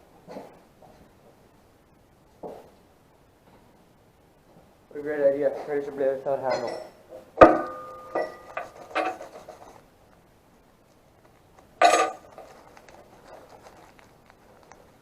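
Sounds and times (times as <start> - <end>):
light metal clinks: 6.4 - 7.0, 7.6 - 9.7
metal clank with ringing tone: 6.5 - 9.2.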